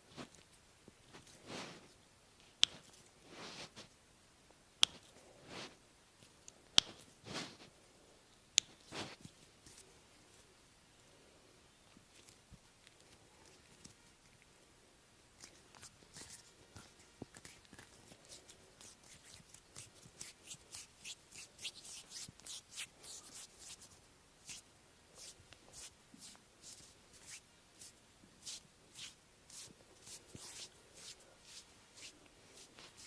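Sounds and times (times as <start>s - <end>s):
hands stroking bare skin: 0.1s - 1.9s, 2.5s - 3.9s, 6.8s - 7.7s, 8.6s - 10.5s, 15.4s - 33.0s.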